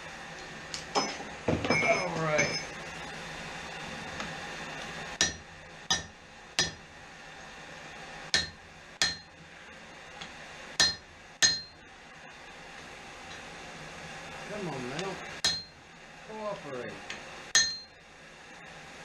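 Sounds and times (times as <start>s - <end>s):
hammer blows on steel anvil: 10.8s - 11.8s.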